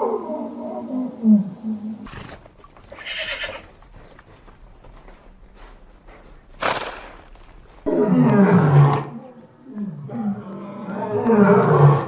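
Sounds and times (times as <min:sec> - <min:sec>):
horse whinny: 0:02.1 - 0:03.8.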